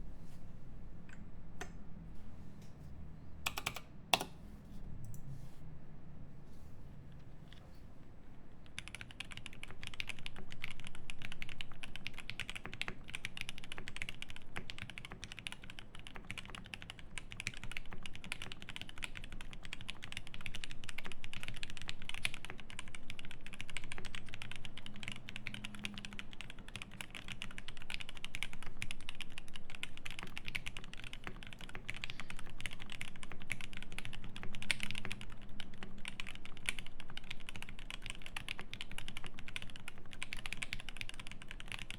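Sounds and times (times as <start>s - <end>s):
fast mechanical keyboard typing: 3.5s - 4.3s, 8.6s - 41.9s.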